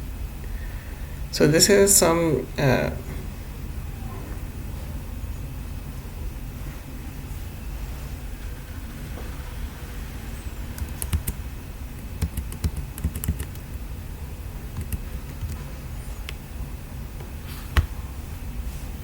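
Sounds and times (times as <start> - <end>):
low steady hum: 0.0 - 19.0.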